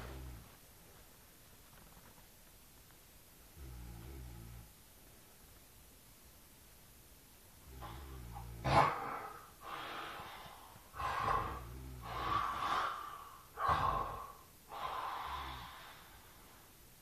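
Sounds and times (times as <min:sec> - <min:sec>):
man snoring: 0:03.6 - 0:04.7, 0:07.6 - 0:16.2.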